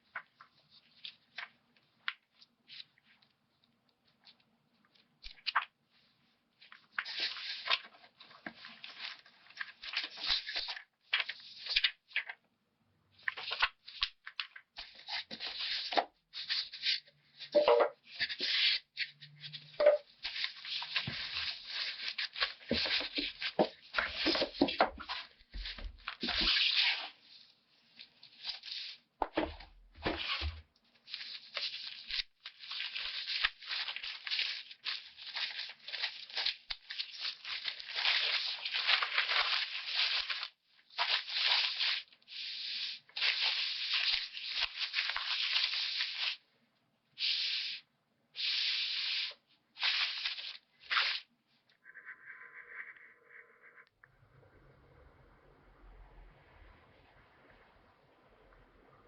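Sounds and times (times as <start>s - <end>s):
packaging crinkling and rustling: 6.6s - 12.4s, 13.2s - 46.4s, 49.2s - 51.3s.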